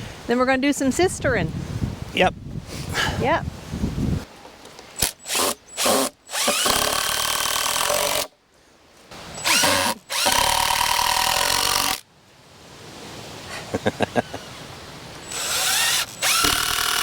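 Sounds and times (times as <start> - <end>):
power drill whining: 5.0 - 8.3, 9.3 - 12.0, 15.3 - 17.0.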